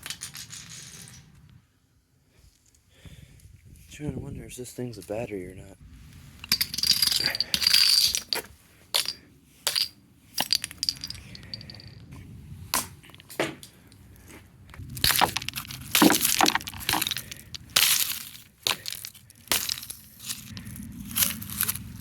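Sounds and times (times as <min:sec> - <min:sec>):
plastic part cracking and breaking: 0:15.0 - 0:20.5.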